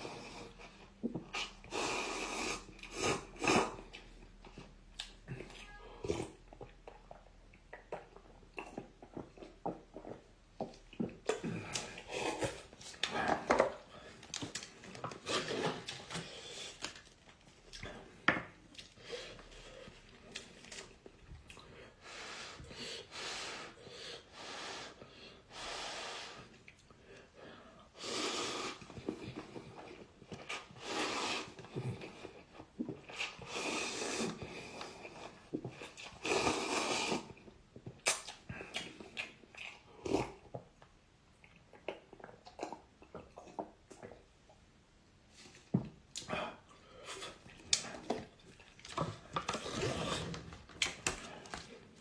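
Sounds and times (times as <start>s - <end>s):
noodles being slurped: 28.0s - 40.5s, 47.0s - 52.0s.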